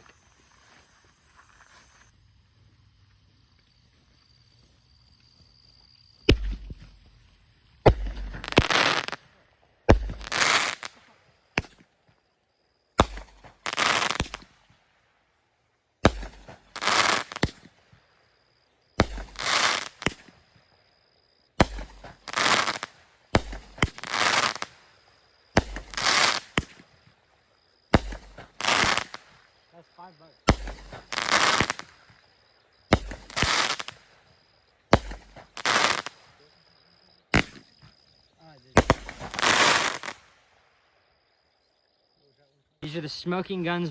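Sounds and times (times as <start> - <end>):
firework hissing burst: 0.0 - 2.3, 7.9 - 9.3, 9.9 - 11.1, 13.0 - 14.5, 16.2 - 17.7, 19.0 - 20.4, 21.6 - 24.9, 25.6 - 26.8, 27.9 - 29.4, 30.5 - 32.0, 32.9 - 34.1, 35.0 - 36.3, 38.8 - 40.4
firework launch bangs: 6.3 - 7.0, 7.8 - 9.2, 9.9 - 11.0, 13.0 - 14.5, 16.0 - 17.8, 19.0 - 20.4, 21.6 - 24.8, 25.6 - 26.9, 28.0 - 29.4, 30.4 - 32.2, 32.9 - 34.0, 34.9 - 36.2, 37.3 - 37.9, 38.7 - 40.3.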